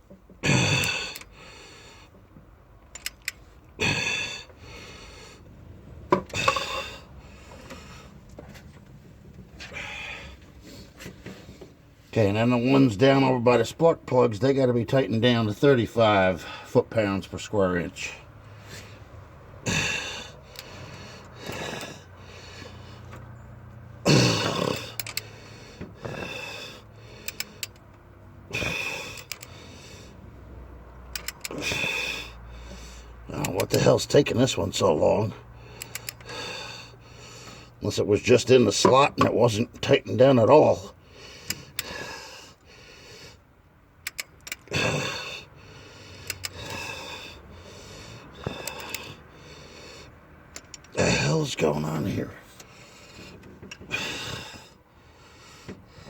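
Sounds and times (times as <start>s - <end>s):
man breathing heavily and grunting: 0.4s - 8.3s, 9.5s - 11.6s, 16.0s - 37.9s, 39.5s - 56.0s
ratchet wrench clicks: 2.9s - 3.4s, 24.7s - 25.4s, 27.2s - 28.0s, 28.6s - 29.6s, 31.0s - 31.9s, 33.3s - 34.1s, 35.7s - 36.4s, 44.0s - 44.7s, 46.2s - 47.2s, 48.4s - 49.2s, 50.5s - 51.0s
torque wrench ratcheting: 24.3s - 25.4s, 26.0s - 29.7s, 31.0s - 34.9s, 35.6s - 36.8s, 41.4s - 42.3s, 44.0s - 47.4s, 48.4s - 49.2s, 50.5s - 51.5s.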